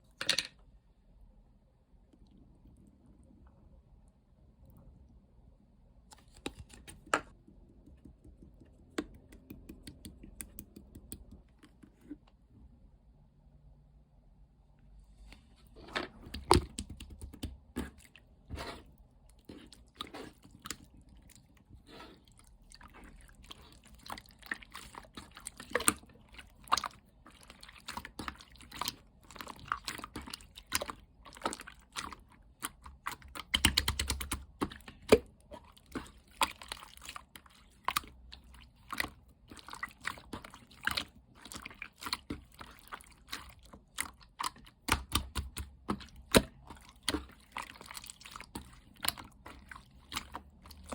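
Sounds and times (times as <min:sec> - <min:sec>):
hands squishing wet slime: 0:06.1 - 0:11.7, 0:16.2 - 0:50.9.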